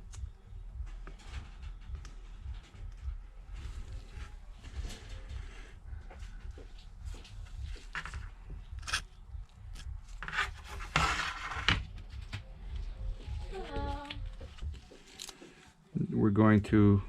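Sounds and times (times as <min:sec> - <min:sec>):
low rumble: 0:00.0 - 0:10.9.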